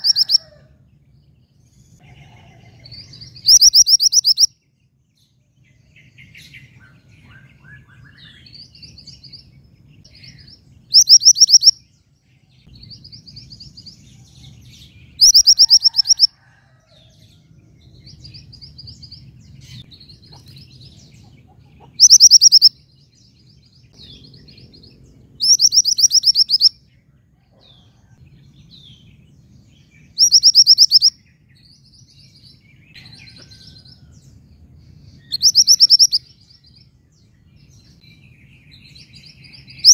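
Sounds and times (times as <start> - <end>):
bird high trills: 0.0 - 0.6, 2.6 - 4.5, 11.0 - 11.8, 15.2 - 16.4, 22.0 - 22.7
soft short bird chirps: 3.4 - 4.5, 10.9 - 11.7.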